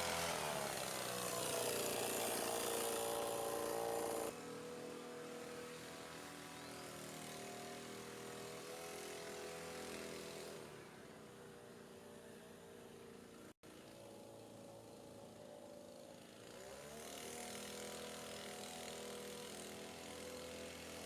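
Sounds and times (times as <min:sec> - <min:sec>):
leaf blower engine running: 0:00.0 - 0:11.0, 0:13.8 - 0:21.0.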